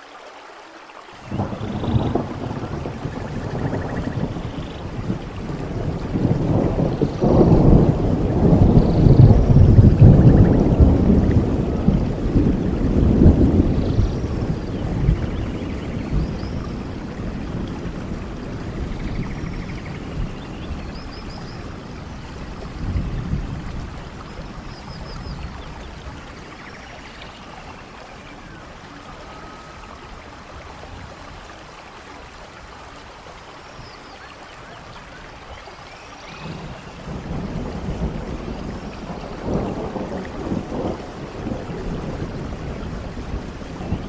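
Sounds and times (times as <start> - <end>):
heavy rain: 0.0 - 44.0
rolling thunder: 1.2 - 31.5, 36.2 - 44.0.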